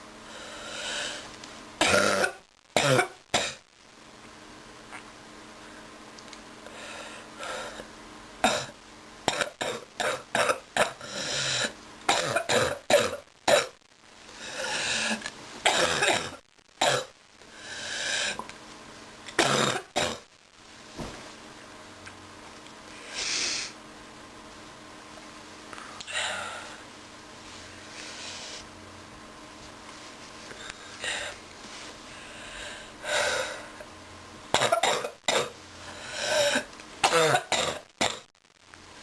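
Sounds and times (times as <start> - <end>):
person breathing: 0.2 - 1.3, 6.6 - 7.9, 14.3 - 15.3, 17.5 - 18.4, 22.9 - 23.8, 25.7 - 26.9, 27.5 - 28.7, 30.5 - 33.9, 35.8 - 36.6
person coughing: 1.8 - 3.6, 11.6 - 13.8, 15.0 - 17.1, 19.4 - 20.2, 34.6 - 35.6, 36.2 - 38.3.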